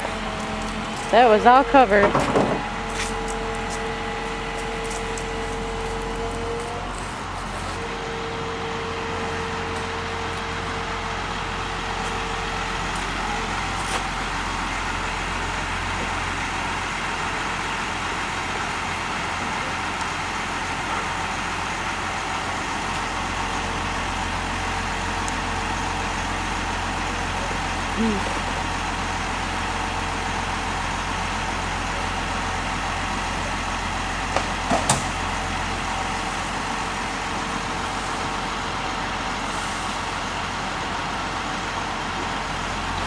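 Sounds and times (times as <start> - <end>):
faint constant hum: 0.0 - 14.2
mechanical engine drone: 0.0 - 34.4.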